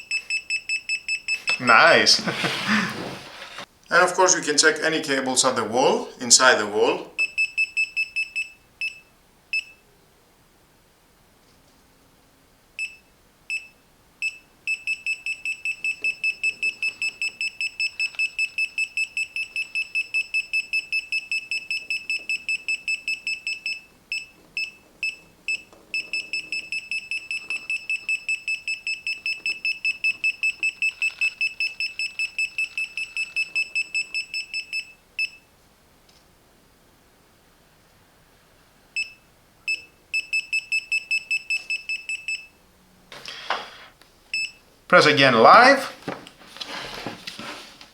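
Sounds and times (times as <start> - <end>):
voltage detector beeping: 0.0 - 2.1, 7.2 - 9.8, 12.8 - 35.5, 39.0 - 42.6.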